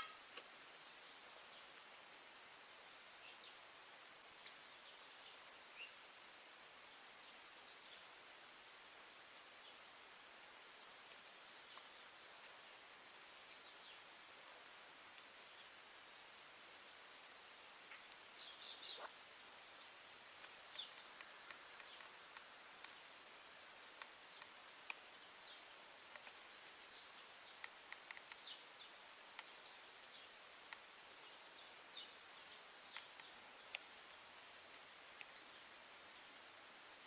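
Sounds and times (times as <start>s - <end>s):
outdoor ambience hiss: 0.0s - 37.0s
faint bird chirps: 17.8s - 23.0s
small clicks: 20.4s - 23.0s, 23.9s - 25.0s, 27.6s - 28.6s.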